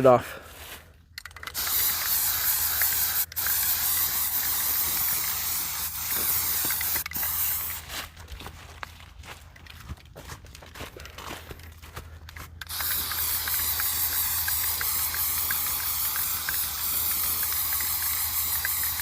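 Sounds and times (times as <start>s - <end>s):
spray paint can hissing: 1.2s - 8.0s, 12.6s - 19.0s.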